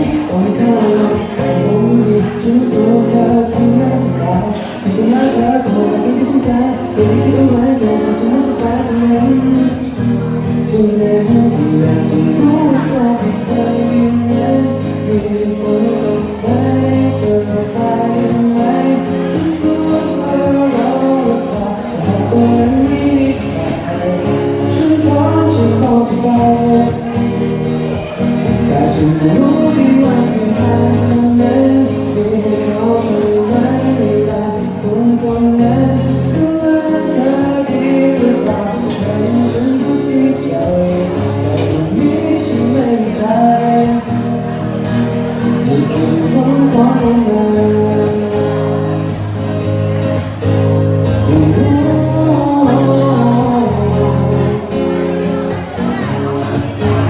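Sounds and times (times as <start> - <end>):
person singing: 0.0 - 44.6, 45.5 - 49.4, 51.0 - 57.0
live band with guitar: 0.0 - 57.0.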